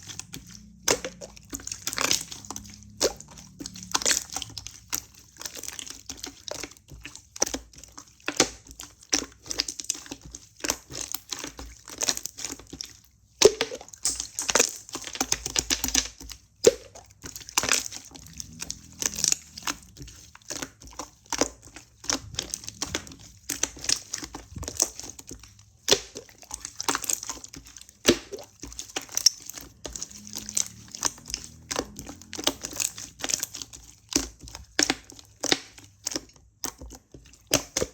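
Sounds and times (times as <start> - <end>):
slime squished by hand: 0.0 - 37.9.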